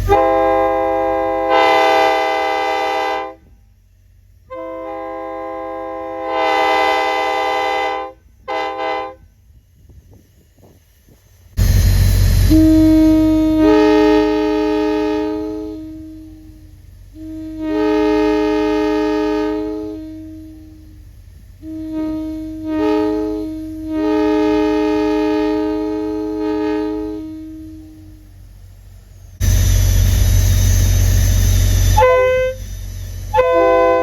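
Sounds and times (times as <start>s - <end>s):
locomotive air horn chord blasts: 0.0s - 3.6s, 4.4s - 9.3s, 11.6s - 28.4s, 29.4s - 34.0s
rush of air: 28.4s - 33.4s.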